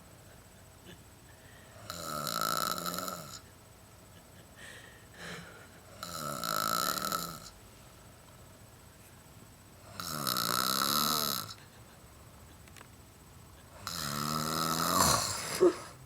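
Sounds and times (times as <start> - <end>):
person snoring: 1.8 - 3.4, 6.0 - 7.5, 9.9 - 11.6, 13.8 - 16.0.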